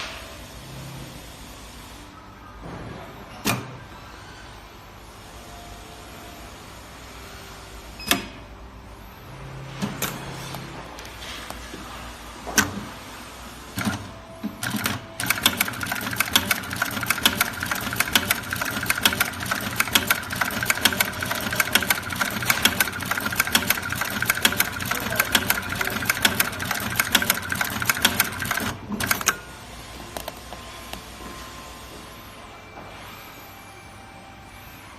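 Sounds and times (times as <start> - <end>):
sewing machine stitching whine: 13.7 - 29.4
sewing machine clicks: 13.8 - 29.4.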